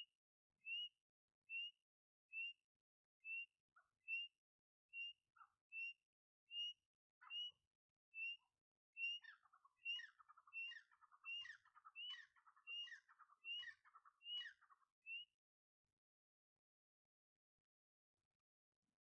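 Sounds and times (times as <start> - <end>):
bird whistled call: 5.8 - 7.6.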